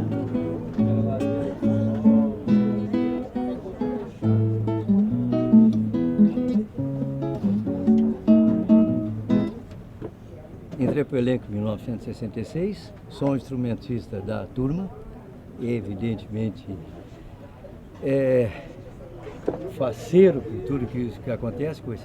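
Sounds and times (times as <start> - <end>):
acoustic guitar strumming: 0.0 - 9.7.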